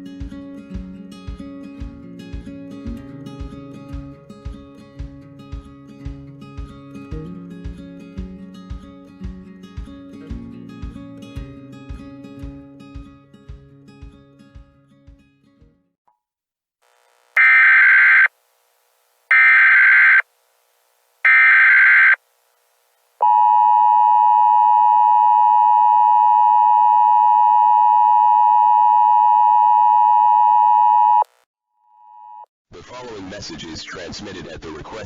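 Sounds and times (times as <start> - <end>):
digital data bursts: 17.4 - 18.3, 19.3 - 20.2, 21.3 - 22.2
two-tone attention signal: 17.4 - 18.3, 19.3 - 20.2, 21.3 - 22.2.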